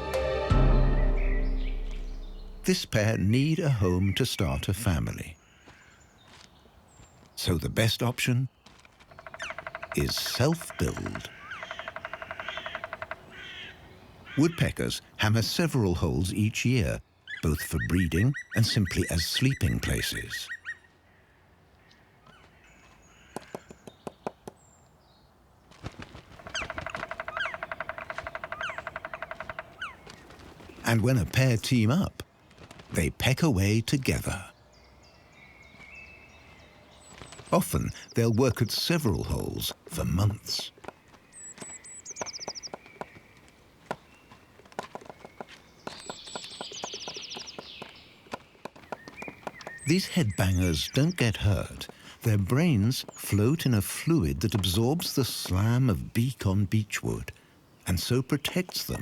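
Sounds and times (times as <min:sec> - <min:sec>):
songbird trilling: 0:00.9 - 0:06.7, 0:08.5 - 0:14.9, 0:16.9 - 0:20.9, 0:26.4 - 0:31.4, 0:34.0 - 0:56.8, 0:57.7 - 0:59.0
woodpecker drumming on wood: 0:09.0 - 0:15.6, 0:22.3 - 0:24.8, 0:26.0 - 0:31.7, 0:37.0 - 0:59.0
short falling bird chirps: 0:41.0 - 0:49.9.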